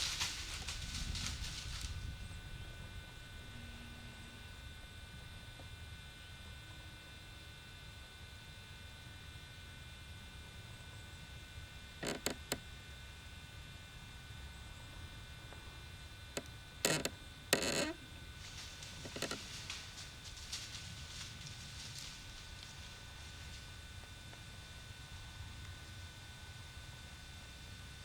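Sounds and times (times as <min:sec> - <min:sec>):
faint electronic hum: 0:00.0 - 0:28.0.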